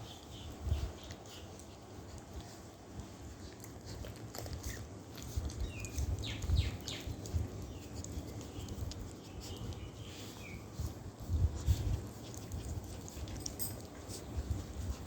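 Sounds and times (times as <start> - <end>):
puppies suckling: 0.0 - 15.0.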